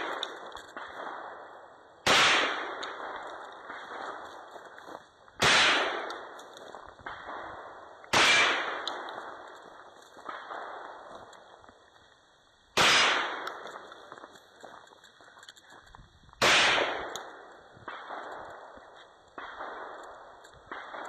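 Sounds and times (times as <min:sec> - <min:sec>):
loud gunshots: 0:00.0 - 0:04.4, 0:05.4 - 0:06.4, 0:07.0 - 0:09.5, 0:12.8 - 0:13.9, 0:16.4 - 0:18.8, 0:19.4 - 0:21.0
faint gunshots: 0:00.0 - 0:04.7, 0:05.4 - 0:11.4, 0:12.8 - 0:14.1, 0:16.4 - 0:21.0.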